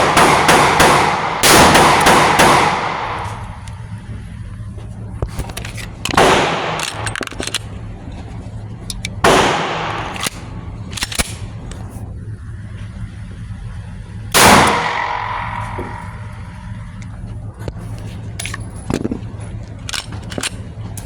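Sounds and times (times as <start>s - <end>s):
loud gunshots with echo: 0.0s - 3.6s, 6.2s - 6.8s, 9.2s - 10.2s, 14.3s - 16.5s.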